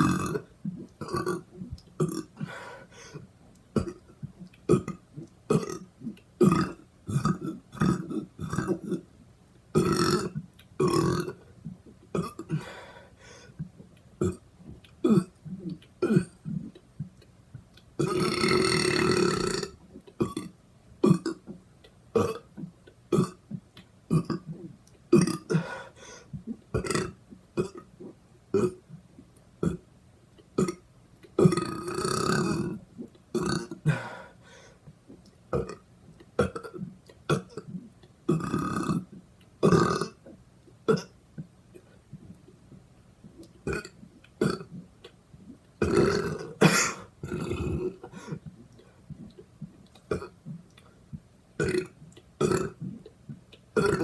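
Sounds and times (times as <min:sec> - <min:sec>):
person burping: 0:00.0 - 0:02.6, 0:03.8 - 0:09.1, 0:09.7 - 0:11.4, 0:12.2 - 0:12.8, 0:14.2 - 0:14.4, 0:15.0 - 0:16.8, 0:18.0 - 0:21.5, 0:22.1 - 0:23.5, 0:24.1 - 0:25.9, 0:26.7 - 0:28.8, 0:29.6 - 0:29.8, 0:30.6 - 0:30.8, 0:31.4 - 0:34.3, 0:35.5 - 0:35.8, 0:36.4 - 0:41.2, 0:43.6 - 0:44.8, 0:45.8 - 0:48.5, 0:50.1 - 0:50.4, 0:51.6 - 0:53.1, 0:53.8 - 0:54.0.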